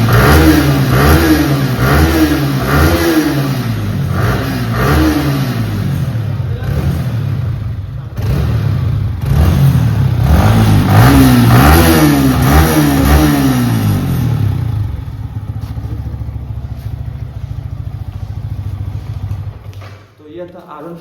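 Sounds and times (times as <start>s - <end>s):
motorcycle engine idling and revving: 0.0s - 20.2s.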